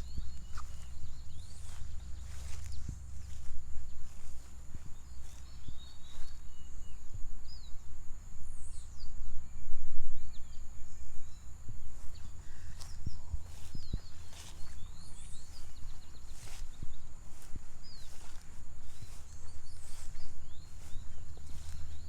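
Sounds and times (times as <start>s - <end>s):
footsteps: 0.0s - 6.4s, 12.0s - 22.0s
low rumble: 0.0s - 6.6s
high insect drone: 0.0s - 22.0s
tropical birds chirping: 0.0s - 22.0s.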